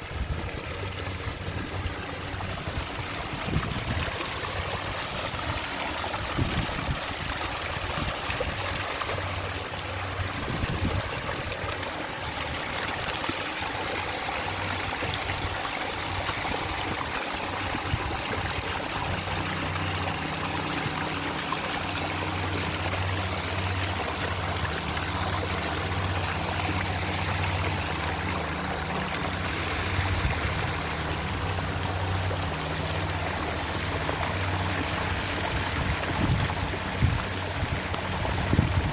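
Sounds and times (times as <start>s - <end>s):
waterfall rushing and splashing: 0.0s - 38.9s.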